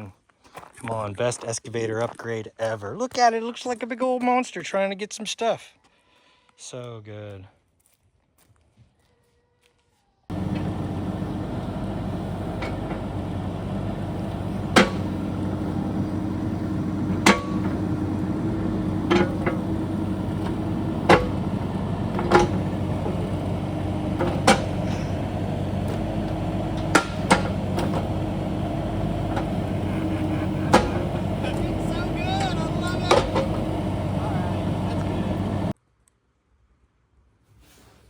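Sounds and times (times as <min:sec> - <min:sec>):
excavator engine running: 0:10.3 - 0:35.8.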